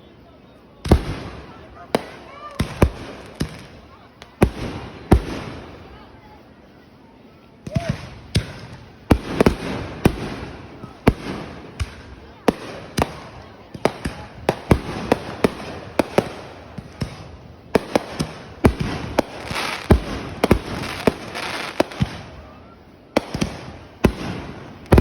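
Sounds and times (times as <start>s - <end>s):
fireworks bangs: 0.8s - 6.0s, 7.6s - 25.0s
fireworks crackling: 0.8s - 25.0s.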